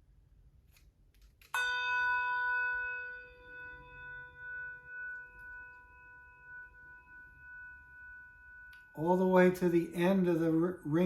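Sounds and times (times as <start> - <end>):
electronic handbell ringing: 1.6 - 9.0.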